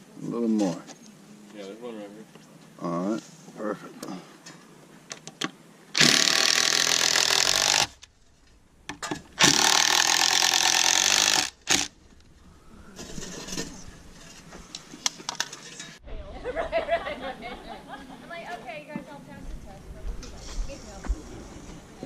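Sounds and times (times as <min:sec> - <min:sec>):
power drill driving screws: 0:06.0 - 0:08.1, 0:09.4 - 0:11.9.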